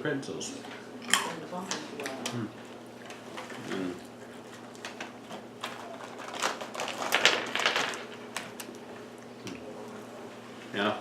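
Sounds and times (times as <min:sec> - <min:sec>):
plastic packaging crinkling: 0:04.6 - 0:08.8.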